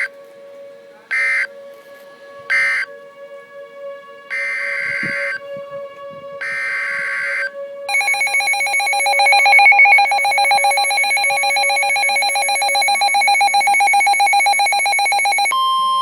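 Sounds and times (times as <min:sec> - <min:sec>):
steady warning tone: 0:00.0 - 0:01.8, 0:02.5 - 0:02.9, 0:03.8 - 0:05.4, 0:06.4 - 0:15.7
electronic alarm trilling: 0:06.4 - 0:15.7.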